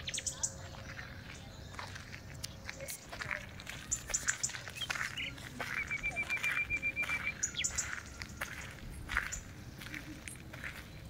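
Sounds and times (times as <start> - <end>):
bird trill: 0.0 - 1.0, 3.8 - 9.5
birds chirping: 0.0 - 11.0.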